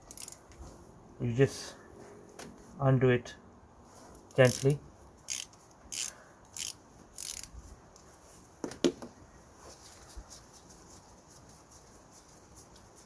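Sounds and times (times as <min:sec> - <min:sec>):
ratchet rasping: 0:00.0 - 0:00.4, 0:04.2 - 0:07.5.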